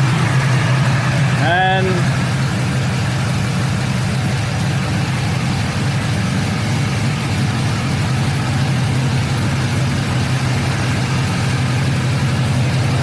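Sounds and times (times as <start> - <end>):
car engine idling: 0.0 - 13.0
radiator fans rushing air: 0.2 - 13.0.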